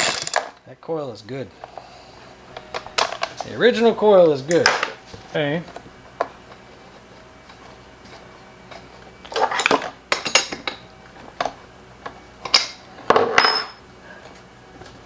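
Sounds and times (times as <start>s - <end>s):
metal tools clinking on workbench: 9.3s - 10.8s, 12.4s - 13.8s.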